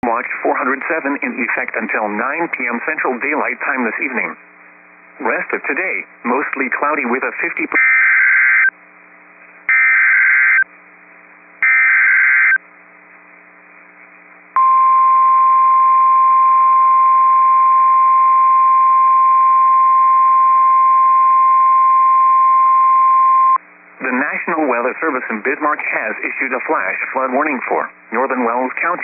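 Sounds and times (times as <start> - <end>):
steady warning alarm tone: 7.8 - 8.7, 9.7 - 10.7, 11.6 - 12.6.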